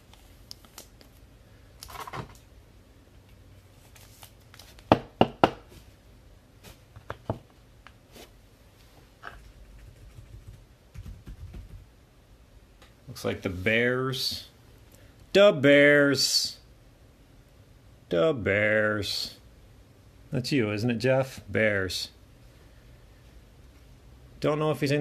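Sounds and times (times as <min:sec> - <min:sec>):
cards rustling: 0:03.8 - 0:04.9.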